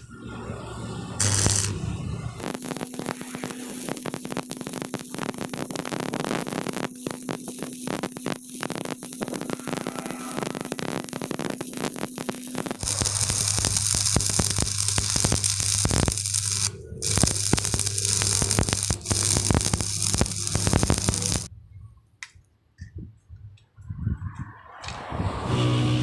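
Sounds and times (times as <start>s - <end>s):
arc welding crackling: 0.0s - 21.5s
low hum: 0.0s - 22.0s
steady hiss: 2.4s - 21.5s.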